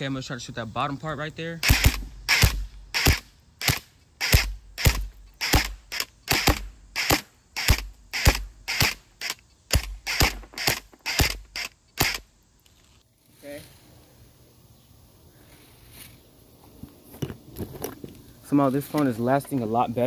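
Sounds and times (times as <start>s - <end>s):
airsoft rifle shots: 1.6s - 12.2s.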